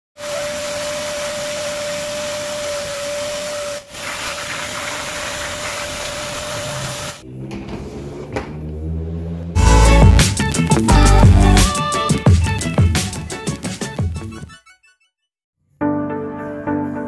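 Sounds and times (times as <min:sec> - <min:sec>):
vacuum cleaner running: 0:00.2 - 0:08.0, 0:09.6 - 0:11.8
background music with beat: 0:09.6 - 0:14.6.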